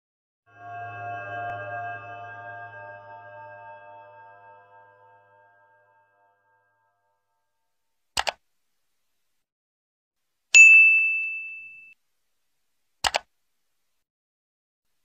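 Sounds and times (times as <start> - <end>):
bright bell-like ding: 10.6 - 12.0
short double clicks: 13.0 - 13.3.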